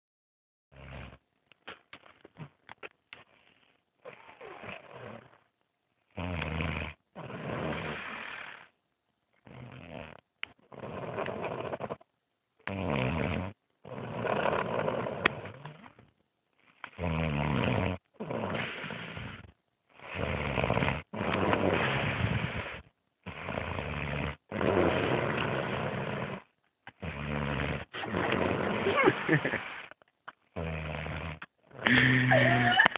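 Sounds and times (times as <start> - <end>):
person snoring: 4.1 - 5.4, 6.2 - 8.7, 9.5 - 12.0, 12.6 - 16.0, 16.8 - 30.0, 30.6 - 32.9.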